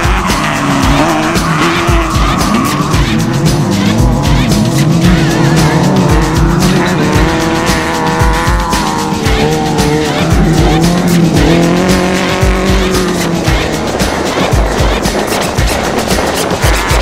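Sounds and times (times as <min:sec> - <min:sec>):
music with steady beat: 0:00.0 - 0:17.0
race engines revving: 0:00.0 - 0:17.0.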